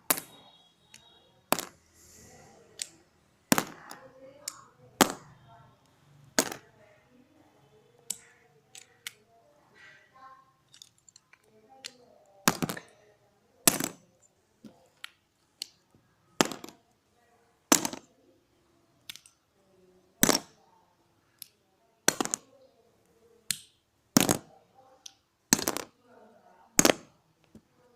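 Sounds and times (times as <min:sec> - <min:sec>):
plastic bricks clicking and snapping: 0:00.1 - 0:01.8, 0:02.8 - 0:05.3, 0:06.4 - 0:06.7, 0:08.0 - 0:09.2, 0:10.7 - 0:13.0, 0:13.6 - 0:16.8, 0:17.7 - 0:18.1, 0:19.0 - 0:19.4, 0:20.2 - 0:20.6, 0:21.4 - 0:22.5, 0:23.5 - 0:26.0, 0:26.8 - 0:27.6.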